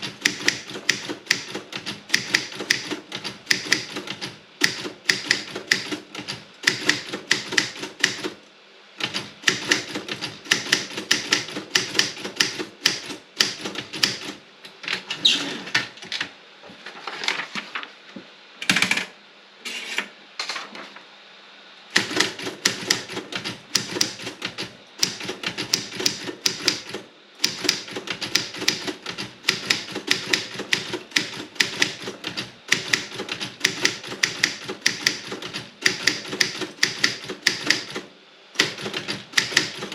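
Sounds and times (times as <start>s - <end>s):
typewriter keystrokes clacking: 0.0s - 8.4s, 9.0s - 14.4s, 22.0s - 38.0s, 38.6s - 39.9s.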